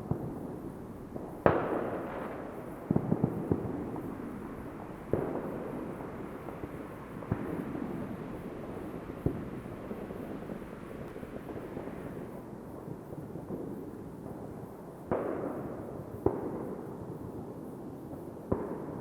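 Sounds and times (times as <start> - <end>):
sharp firework bangs: 0.0 - 12.4
distant fireworks rumble: 0.0 - 19.0
faint firework cracks: 0.0 - 19.0.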